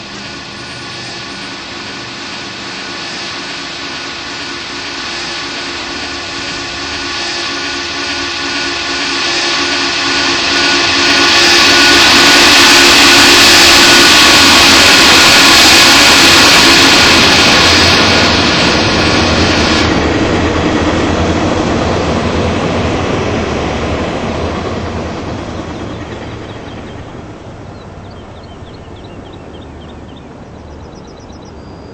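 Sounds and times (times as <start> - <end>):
rumble of passing train: 0.0 - 31.9
train whistle blowing a chord: 7.3 - 17.2.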